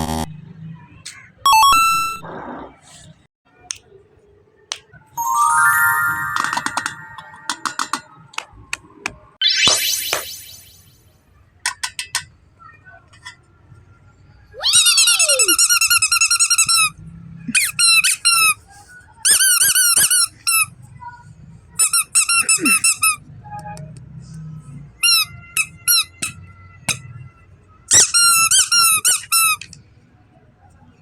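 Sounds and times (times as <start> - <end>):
squeaky baby toy squeaking: 14.6 - 16.9, 27.9 - 29.6.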